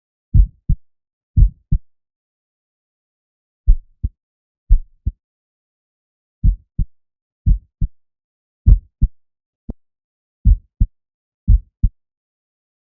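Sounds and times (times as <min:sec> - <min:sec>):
heartbeat thumps: 0:00.3 - 0:00.8, 0:01.4 - 0:01.8, 0:04.7 - 0:05.2, 0:06.4 - 0:07.9, 0:08.7 - 0:09.1, 0:10.4 - 0:10.9, 0:11.5 - 0:11.9.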